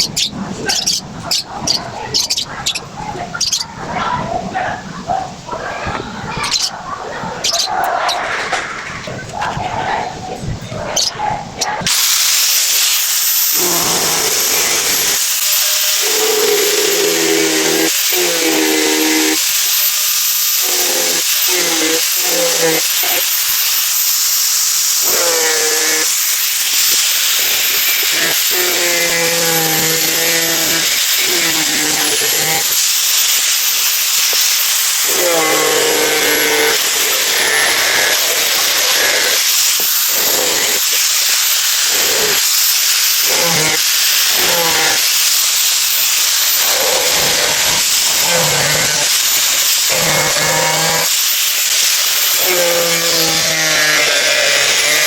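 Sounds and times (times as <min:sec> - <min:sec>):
toy gun hiss: 0:11.6 - 0:55.0.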